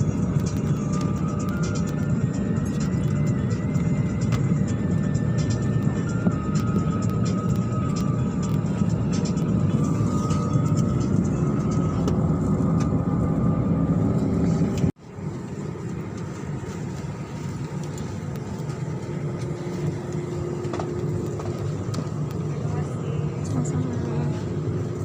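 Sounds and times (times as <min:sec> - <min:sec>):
vehicle rumbling in motion: 0:00.0 - 0:25.0.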